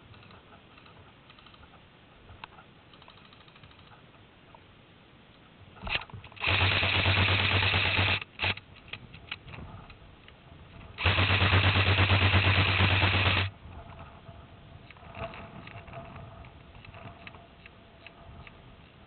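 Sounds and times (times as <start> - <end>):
gearbox motor hum: 5.8 - 8.6, 11.0 - 13.5
airsoft gun full-auto bursts: 6.4 - 8.6, 11.0 - 13.5.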